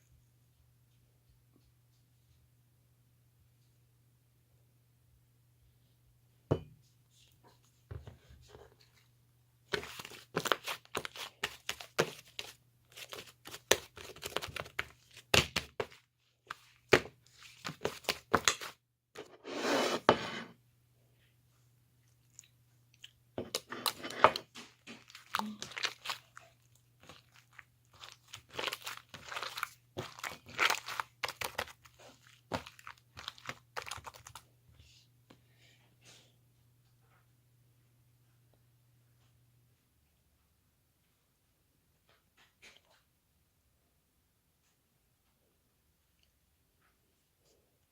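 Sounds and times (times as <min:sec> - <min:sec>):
faint low hum: 0:00.0 - 0:09.9, 0:20.2 - 0:47.9
slime rustling: 0:09.7 - 0:18.8, 0:23.4 - 0:34.5
slime clicking and crackling: 0:25.0 - 0:34.4.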